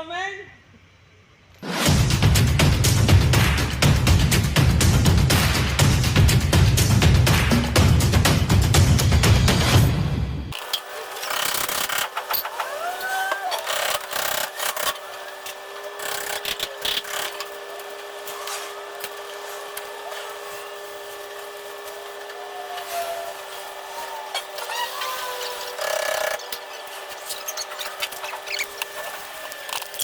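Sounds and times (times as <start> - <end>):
scraping and rubbing: 10.6 - 30.0
short squeaks: 10.6 - 30.0.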